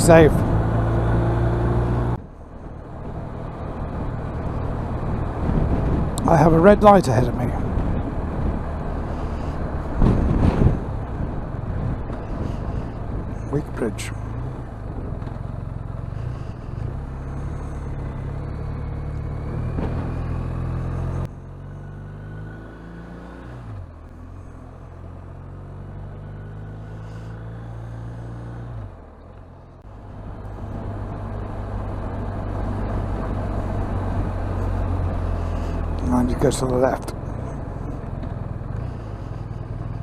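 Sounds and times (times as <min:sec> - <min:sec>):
motorcycle engine running: 0:00.0 - 0:22.2, 0:23.9 - 0:40.0.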